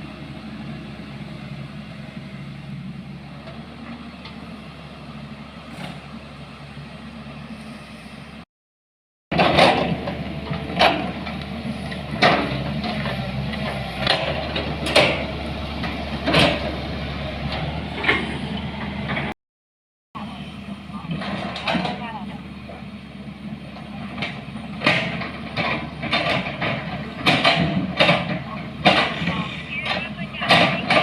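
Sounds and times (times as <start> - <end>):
vehicle clunks and rattles: 5.6 - 6.3, 9.3 - 19.4, 20.9 - 31.0.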